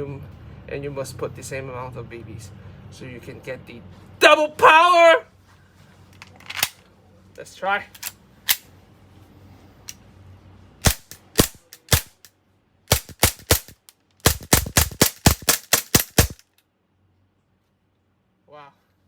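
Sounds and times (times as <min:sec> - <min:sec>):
airsoft pistol shots: 0:10.8 - 0:12.3, 0:12.9 - 0:16.4.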